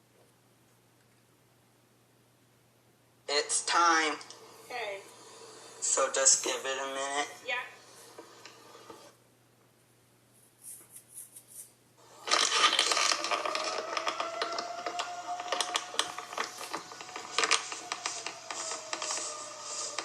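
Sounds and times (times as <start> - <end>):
crackling and clattering noise: 5.3 - 9.2, 12.0 - 20.0
tornado siren: 12.0 - 20.0.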